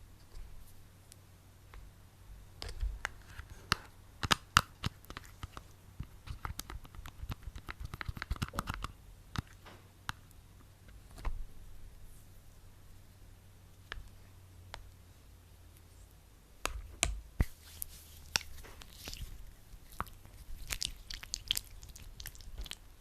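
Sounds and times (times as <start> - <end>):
gel rubbed between hands: 17.4 - 22.8.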